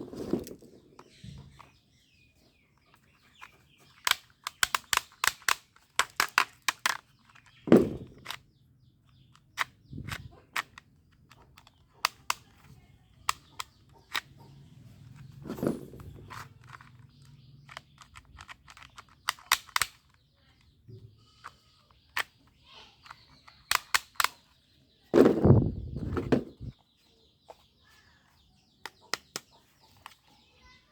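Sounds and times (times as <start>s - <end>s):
plastic toy guns clicking: 3.0s - 8.4s, 9.0s - 14.4s, 16.0s - 20.7s, 21.4s - 24.5s, 28.8s - 30.2s.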